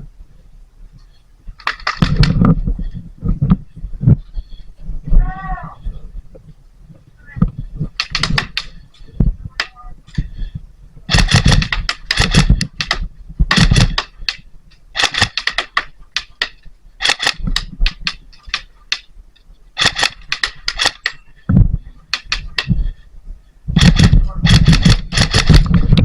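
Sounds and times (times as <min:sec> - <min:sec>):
airsoft guns firing bursts: 0:08.0 - 0:08.7, 0:11.1 - 0:18.7, 0:19.8 - 0:21.1, 0:23.8 - 0:25.8.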